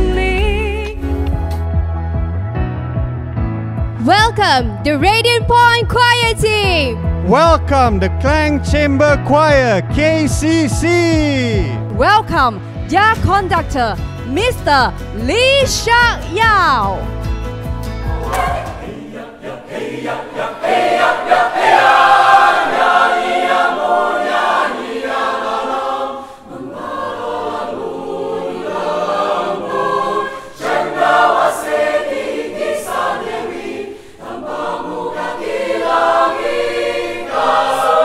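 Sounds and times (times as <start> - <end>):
choir singing: 18.0 - 38.0.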